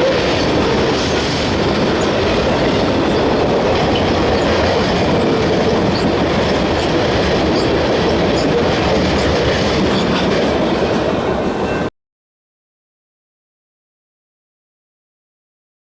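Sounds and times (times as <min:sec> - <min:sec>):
train wheels rumbling on rails: 0:00.0 - 0:11.9.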